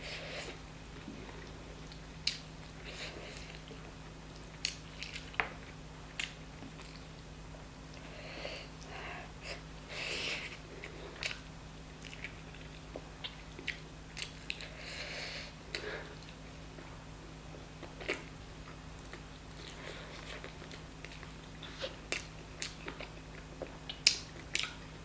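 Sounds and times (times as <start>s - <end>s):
steady low hum: 0.0s - 25.0s
wet mouth clicks and smacks: 2.2s - 2.5s
chewing and biting food: 10.8s - 14.8s, 19.1s - 24.8s.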